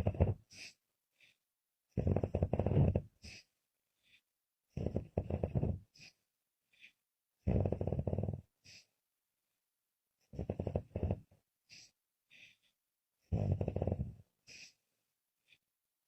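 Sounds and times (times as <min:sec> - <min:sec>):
faint breathy puff: 0:00.5 - 0:00.8, 0:11.7 - 0:12.6, 0:14.5 - 0:14.8
woman snoring: 0:02.0 - 0:03.1, 0:04.8 - 0:06.2, 0:07.4 - 0:08.5, 0:10.3 - 0:11.3, 0:13.3 - 0:14.6.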